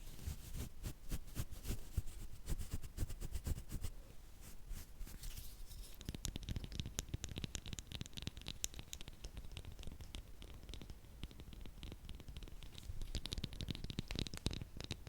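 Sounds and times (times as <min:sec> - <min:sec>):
soft clicks and crackles: 0:05.1 - 0:15.0.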